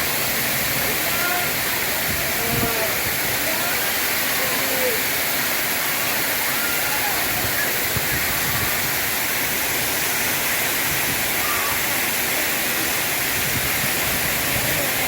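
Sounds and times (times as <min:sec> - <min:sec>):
waterfall rushing into a pool: 0:00.0 - 0:15.0
faint voices: 0:00.6 - 0:15.0.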